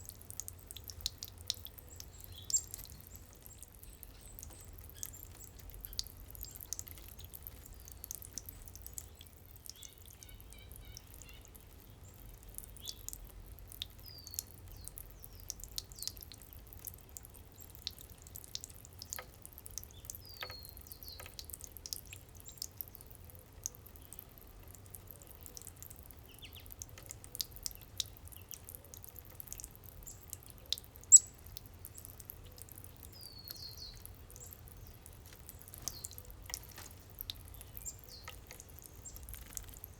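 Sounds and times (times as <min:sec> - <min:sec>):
water fountain dripping and splashing: 0:00.0 - 0:39.9
high bird chirps: 0:31.1 - 0:31.4.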